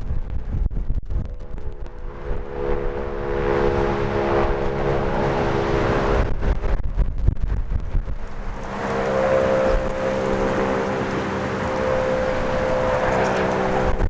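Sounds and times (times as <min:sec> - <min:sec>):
wind rumble on microphone: 0:00.0 - 0:14.0
two-tone warning siren: 0:01.2 - 0:06.4, 0:08.4 - 0:14.0.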